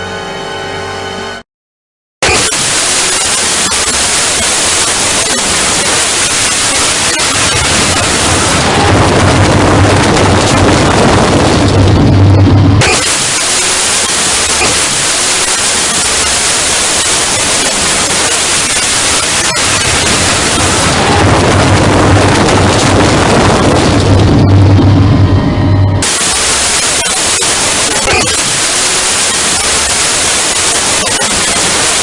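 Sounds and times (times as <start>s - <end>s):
harsh distorted static noise: 2.2s - 32.0s.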